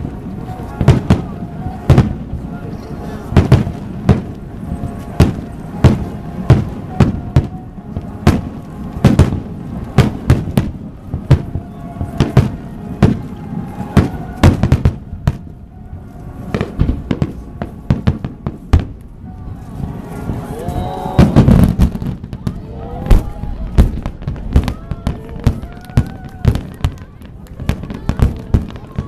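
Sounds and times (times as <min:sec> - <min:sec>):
fireworks bursting: 0:00.0 - 0:29.0.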